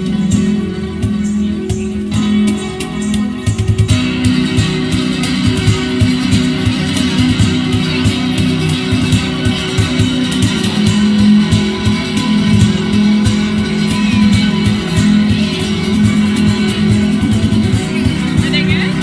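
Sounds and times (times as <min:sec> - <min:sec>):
fast guitars playing: 0:00.0 - 0:19.0
steady percussive beat: 0:00.0 - 0:19.0.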